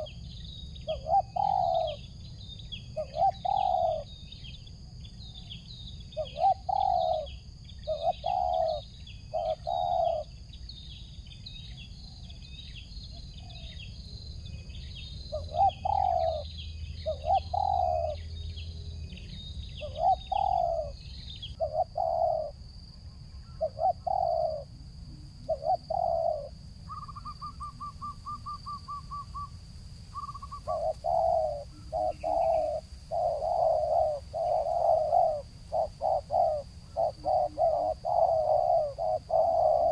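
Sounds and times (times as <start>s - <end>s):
small birds chirping: 0.0s - 39.9s
dove cooing: 0.8s - 2.1s, 2.7s - 4.2s, 6.1s - 10.4s, 15.3s - 18.3s, 19.1s - 22.6s, 23.4s - 29.5s, 30.1s - 39.9s.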